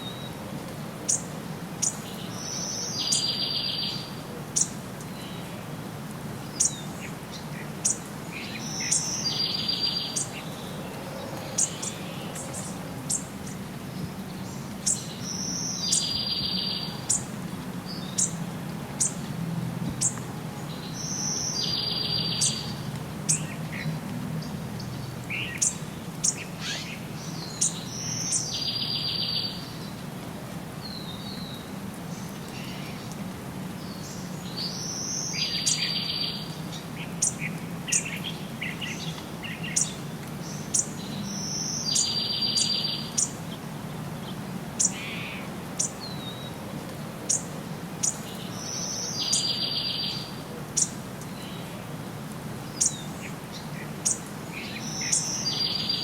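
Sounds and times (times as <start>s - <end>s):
low background noise: 0.0s - 56.0s
birds chirping and singing: 7.4s - 17.3s, 20.0s - 23.9s, 25.3s - 29.7s, 37.2s - 43.3s, 47.3s - 51.6s, 52.8s - 56.0s.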